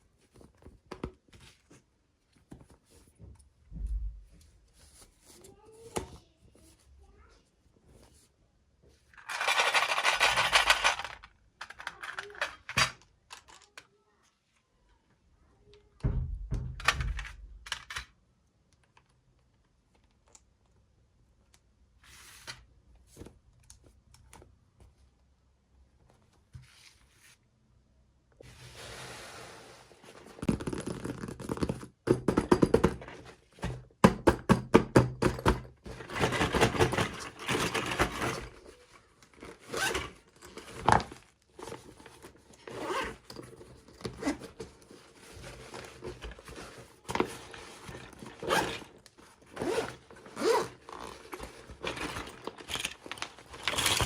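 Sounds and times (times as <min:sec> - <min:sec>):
toy packaging tearing: 0:09.2 - 0:12.8, 0:47.2 - 0:54.0.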